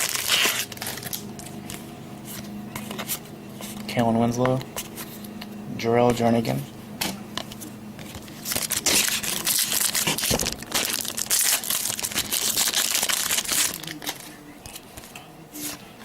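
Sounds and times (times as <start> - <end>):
wrapper crinkling: 0.0 - 3.2, 7.4 - 15.8.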